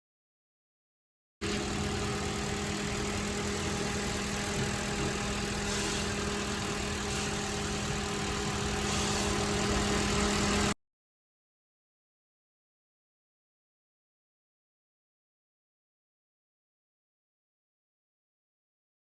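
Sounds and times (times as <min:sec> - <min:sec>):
car engine idling: 0:01.4 - 0:10.7.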